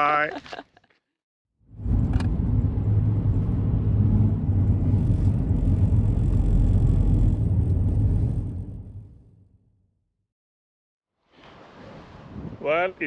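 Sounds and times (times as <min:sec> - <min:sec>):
car engine and road rumble: 0:01.6 - 0:09.6.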